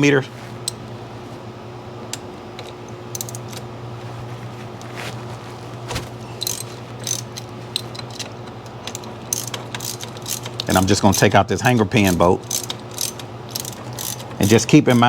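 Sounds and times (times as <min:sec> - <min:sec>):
steady low hum: 0:00.0 - 0:15.0
ratchet wrench clicking: 0:02.6 - 0:03.4, 0:06.4 - 0:15.0.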